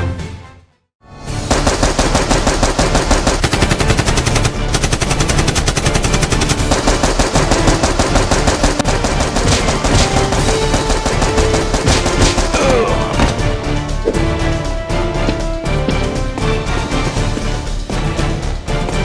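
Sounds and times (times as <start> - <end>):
machine-gun fire: 1.4 - 12.6.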